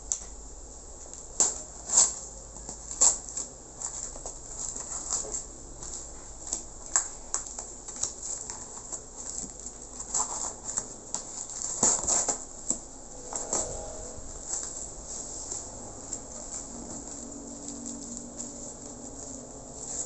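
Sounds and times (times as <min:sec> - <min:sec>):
packaging crinkling and rustling: 0:01.4 - 0:12.8.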